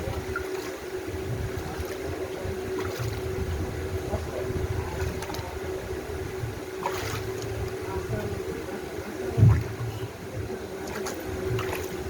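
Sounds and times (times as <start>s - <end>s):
steady mechanical hum: 0.0s - 12.0s
wind buffeting microphone: 0.0s - 12.0s.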